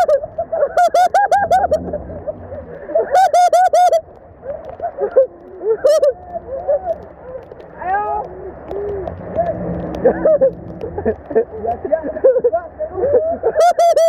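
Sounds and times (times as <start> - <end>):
low steady rumble: 0.0 - 13.6
voices calling and shouting: 0.0 - 14.0.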